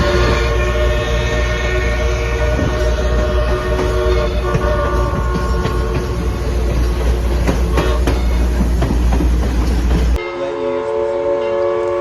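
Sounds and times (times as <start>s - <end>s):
steam whistle chord: 0.0s - 6.2s, 10.2s - 12.0s
train rumble and rail clicks: 0.0s - 12.0s.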